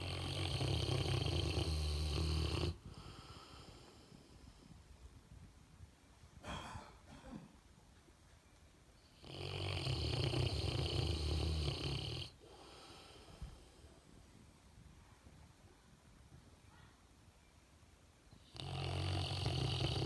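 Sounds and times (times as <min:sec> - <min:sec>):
loud rattling snore: 0:00.0 - 0:02.8, 0:09.2 - 0:12.4, 0:18.6 - 0:20.0
faint breath: 0:02.8 - 0:05.2, 0:12.4 - 0:14.5.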